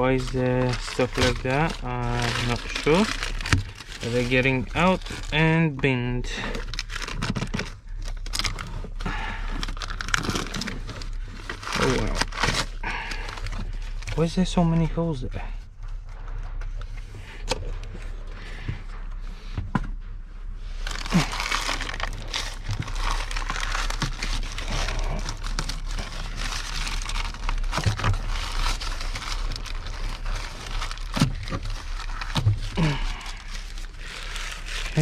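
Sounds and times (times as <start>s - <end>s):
material crackling and crumpling: 0.0s - 17.0s, 20.0s - 35.0s.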